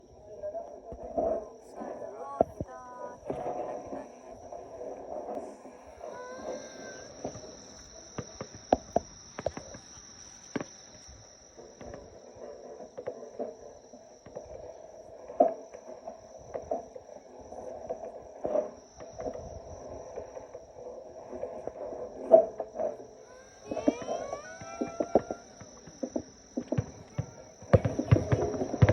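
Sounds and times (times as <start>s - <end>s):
crickets chirring: 0.0s - 28.9s
fireworks bangs: 5.3s - 13.2s, 21.4s - 28.9s.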